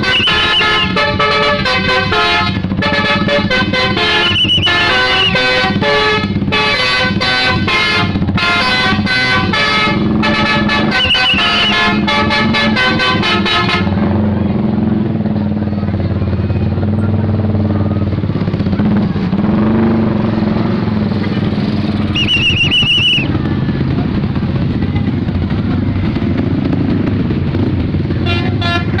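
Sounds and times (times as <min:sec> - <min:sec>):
musical bus horn: 0:00.0 - 0:14.3, 0:22.0 - 0:23.4, 0:28.1 - 0:29.0
vehicle engine droning: 0:00.0 - 0:29.0.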